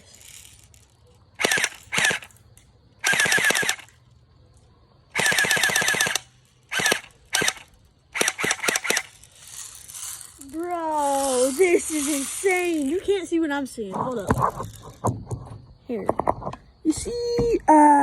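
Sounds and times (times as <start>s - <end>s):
airsoft gun firing bursts: 1.4s - 2.3s, 3.0s - 3.9s, 5.1s - 9.1s.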